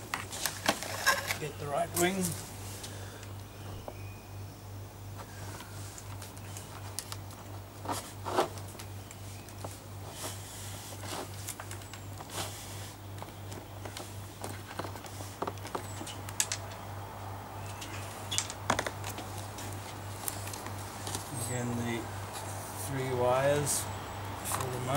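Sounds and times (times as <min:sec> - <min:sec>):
steady low hum: 0:00.0 - 0:24.9.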